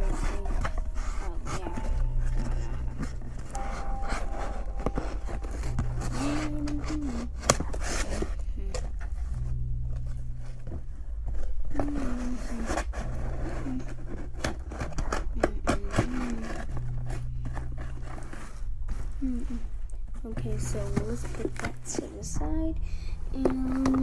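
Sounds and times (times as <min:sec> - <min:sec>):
box packaging clicks and scraping: 0:00.0 - 0:09.3, 0:11.4 - 0:19.1.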